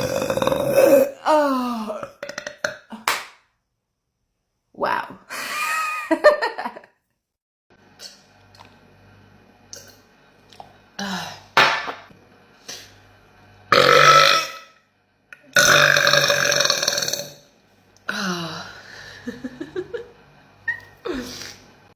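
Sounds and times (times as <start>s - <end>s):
woman belching: 0.0s - 3.0s, 13.7s - 14.7s, 15.5s - 17.4s.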